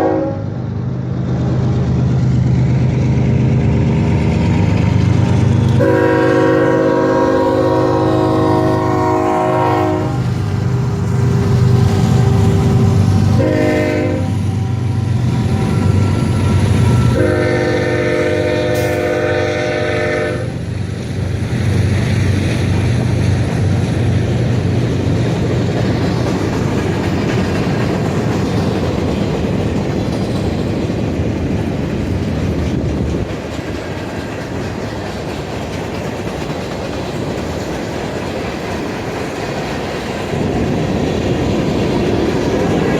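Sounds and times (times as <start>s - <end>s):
train air horn blasts: 0.0s - 0.6s, 5.8s - 20.6s
locomotive engines rumbling: 0.0s - 42.9s
train wheel clatter: 1.0s - 42.9s.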